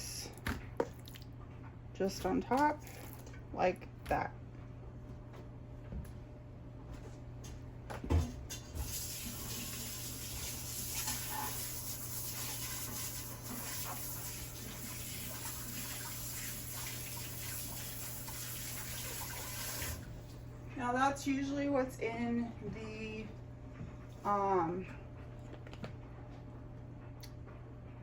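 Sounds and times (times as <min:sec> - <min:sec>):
tap water running into sink: 0:08.8 - 0:20.2.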